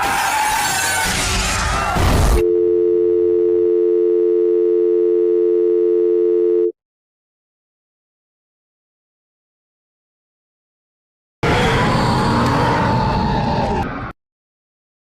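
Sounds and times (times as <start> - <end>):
telephone dial tone: 2.4 - 6.7.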